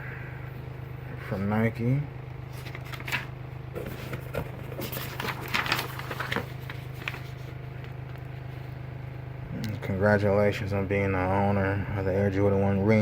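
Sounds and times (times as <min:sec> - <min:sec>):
paper packaging crinkling: 0:02.5 - 0:08.3.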